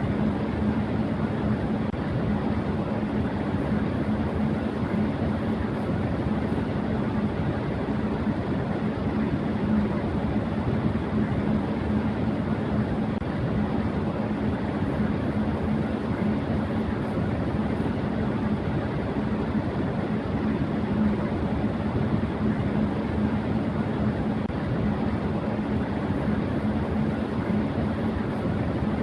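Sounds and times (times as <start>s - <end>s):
electric fan running: 0.0s - 29.0s.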